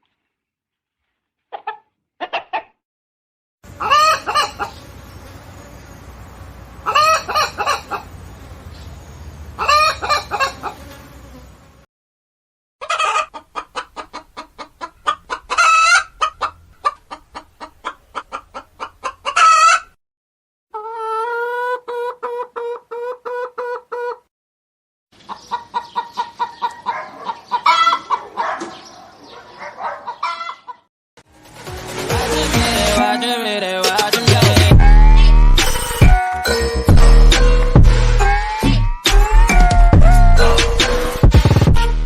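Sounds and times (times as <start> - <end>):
hens clucking: 1.5 - 2.7, 3.7 - 4.8, 6.8 - 8.1, 9.6 - 10.8, 12.8 - 19.9, 20.7 - 24.2, 25.2 - 30.8
hen squawks: 3.8 - 4.7
hen pulsing call: 3.8 - 4.8.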